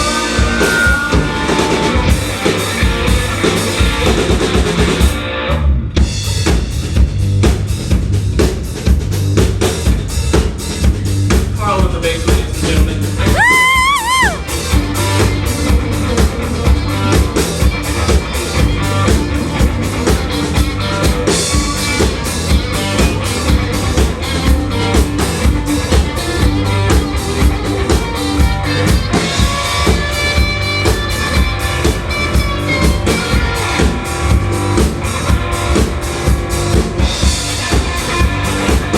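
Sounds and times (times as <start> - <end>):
drum kit beat: 0.0 - 5.3, 5.9 - 38.9
rock band playing live: 0.0 - 38.9.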